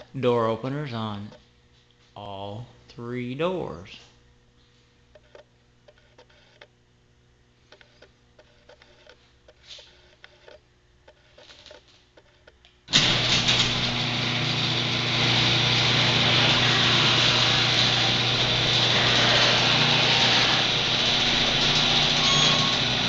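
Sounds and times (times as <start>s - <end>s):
garage door opener motor: 12.9s - 23.0s.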